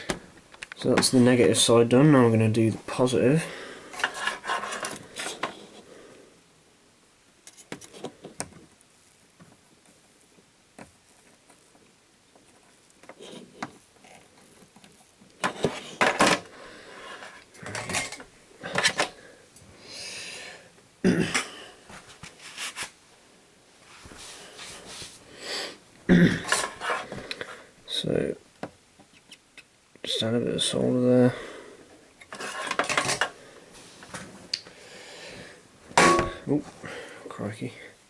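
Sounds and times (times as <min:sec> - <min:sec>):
tools scraping: 0:03.9 - 0:05.8, 0:15.4 - 0:19.1, 0:26.4 - 0:27.3, 0:32.2 - 0:33.4, 0:36.0 - 0:36.8.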